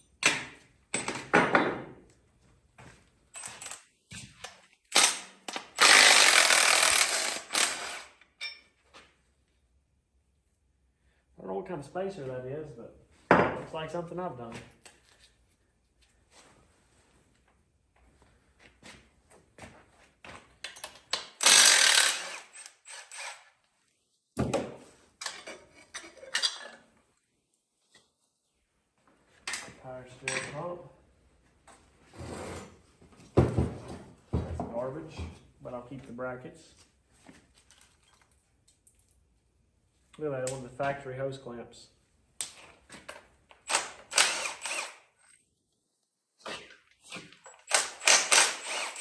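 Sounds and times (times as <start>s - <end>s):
tools and metal parts clicking: 3.4s - 8.7s, 20.6s - 23.5s, 25.2s - 26.8s, 46.5s - 49.0s
power tool burst: 5.8s - 8.1s, 21.4s - 23.3s, 43.7s - 45.0s, 47.7s - 49.0s
ratchet wrench clicking: 21.4s - 23.4s.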